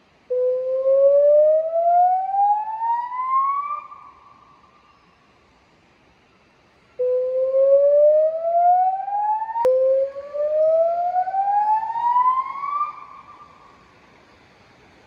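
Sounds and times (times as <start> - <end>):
electronic warning siren whoops: 7.0 - 13.6.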